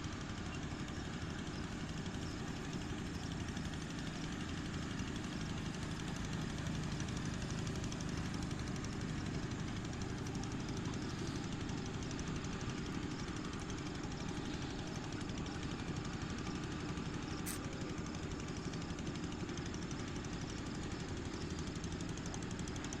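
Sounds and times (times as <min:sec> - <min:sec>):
engine running: 0:00.0 - 0:23.0
short click: 0:17.4 - 0:17.6.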